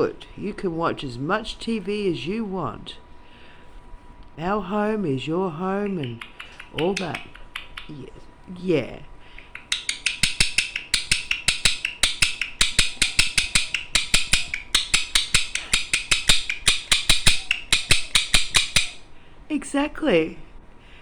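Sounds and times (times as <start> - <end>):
parrot clicking: 5.6 - 8.3, 9.2 - 19.2.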